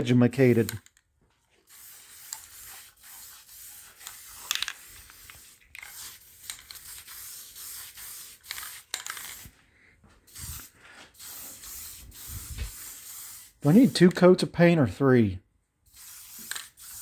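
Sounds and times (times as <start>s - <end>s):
spray can hissing bursts: 1.7s - 9.5s, 10.3s - 14.2s, 15.9s - 17.0s.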